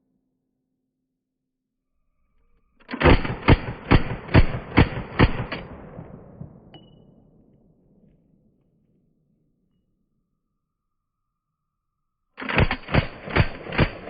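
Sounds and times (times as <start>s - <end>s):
submachine gun shots: 2.9s - 6.2s, 12.4s - 14.0s
gunshot echo: 2.9s - 7.5s.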